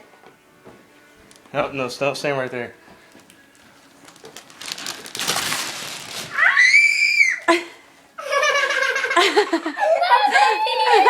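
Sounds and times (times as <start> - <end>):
wrapping paper tearing: 3.5 - 7.0
children shrieking: 6.2 - 7.5, 9.8 - 11.0
child squealing: 6.3 - 7.5, 9.8 - 11.0.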